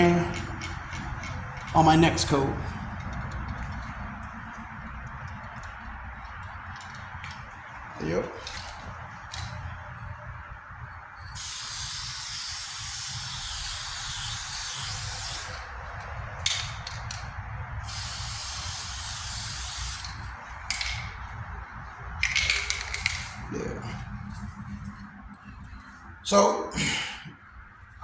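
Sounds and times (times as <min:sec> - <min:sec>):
aerosol paint spraying: 0:11.3 - 0:15.6, 0:17.8 - 0:20.3.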